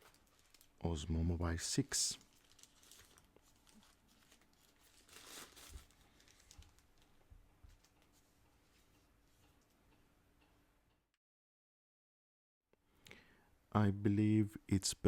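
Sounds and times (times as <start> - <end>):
packaging rustling and crinkling: 0.0 - 0.9, 2.2 - 8.2.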